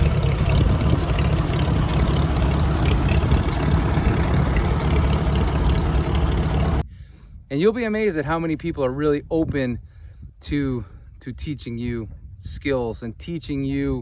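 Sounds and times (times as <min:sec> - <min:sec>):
tractor engine running: 0:00.0 - 0:06.8.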